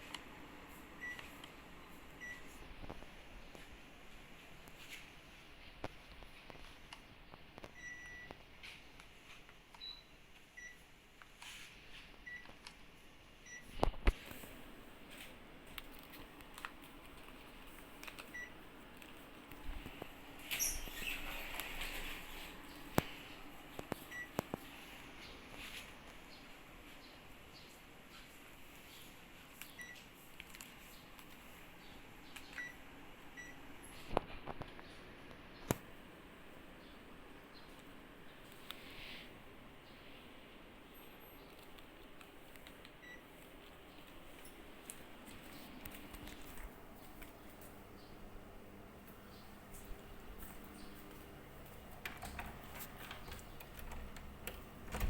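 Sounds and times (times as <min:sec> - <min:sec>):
air conditioner beeps: 0:00.0 - 0:02.7, 0:07.6 - 0:08.8, 0:09.7 - 0:11.0, 0:12.1 - 0:12.7, 0:13.4 - 0:15.2, 0:16.1 - 0:25.4, 0:29.6 - 0:30.2, 0:32.3 - 0:33.9, 0:42.8 - 0:43.5.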